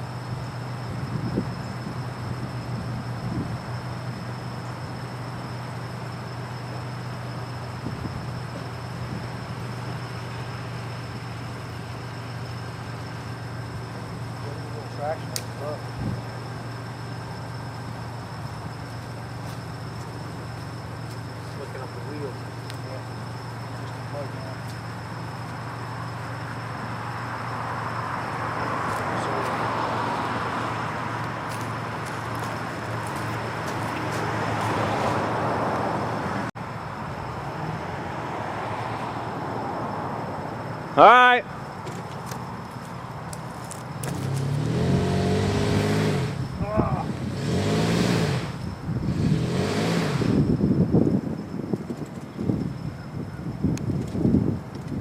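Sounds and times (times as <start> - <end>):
truck engine straining: 40.3 - 53.2.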